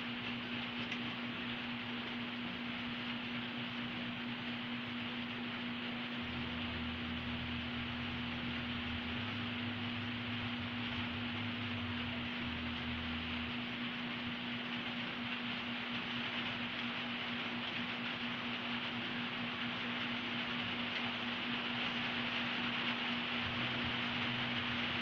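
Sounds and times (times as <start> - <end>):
faint low rumble: 0.0 - 17.8
background hiss: 0.0 - 25.0
constant low hum: 0.0 - 25.0.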